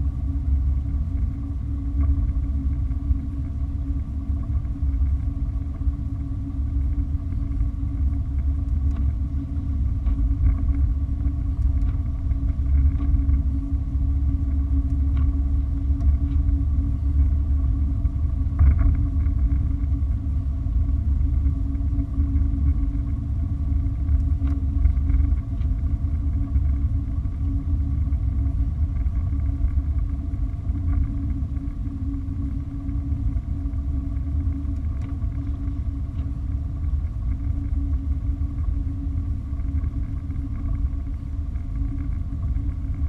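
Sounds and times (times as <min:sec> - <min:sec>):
car road and engine rumble: 0:00.0 - 0:43.0
faint even hum: 0:00.0 - 0:43.0
light ticks: 0:08.4 - 0:09.1.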